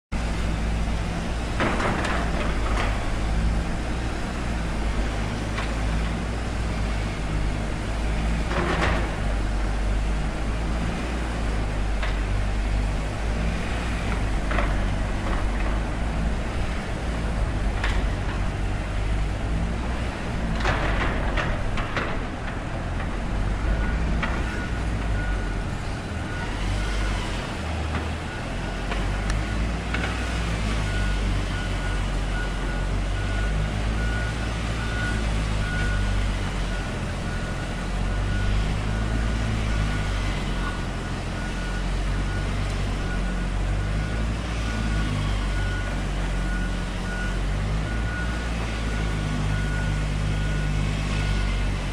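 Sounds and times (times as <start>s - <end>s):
heavy vehicle engine rumbling: 0.1s - 51.9s
reversing alarm beeping: 23.6s - 27.4s, 30.8s - 51.8s.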